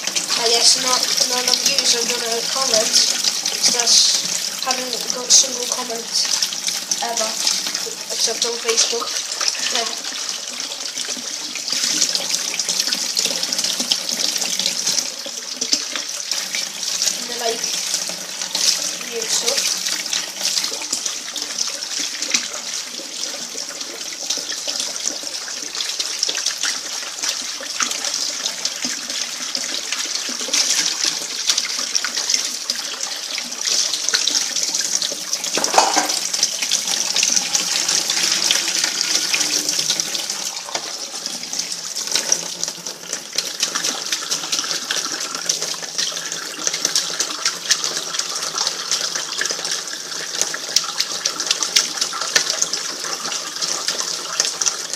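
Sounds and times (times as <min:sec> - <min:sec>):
tap running into sink: 0:33.7 - 0:49.6.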